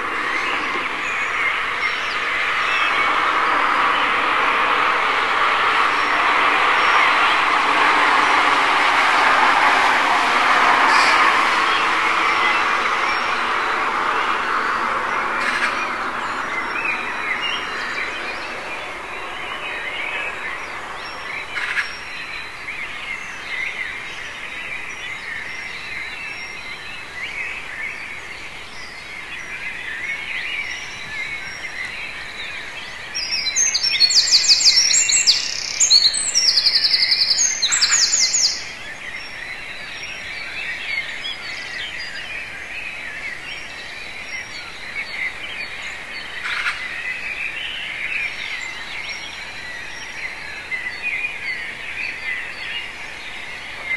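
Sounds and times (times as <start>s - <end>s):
songbirds chorus: 0.0s - 53.9s
bird high trilling song: 28.8s - 42.8s.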